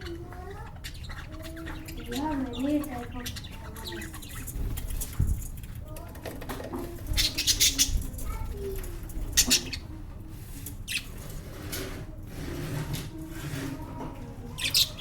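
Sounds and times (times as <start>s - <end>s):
lovebirds chirping: 0.0s - 5.6s, 7.0s - 10.0s, 10.8s - 11.3s, 14.4s - 15.0s
low background hum: 0.0s - 15.0s.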